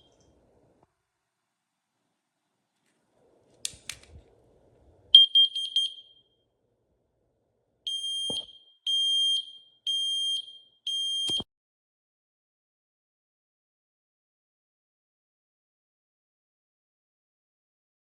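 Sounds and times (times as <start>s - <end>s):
alarm beeping: 5.2s - 6.2s, 7.9s - 11.4s
alarm button clicks: 8.1s - 8.6s, 11.2s - 11.4s.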